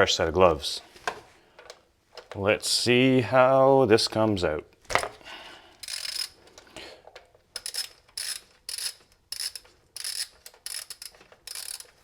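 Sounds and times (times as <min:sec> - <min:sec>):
ratchet wrench clicking: 0:05.8 - 0:06.4, 0:07.6 - 0:12.0.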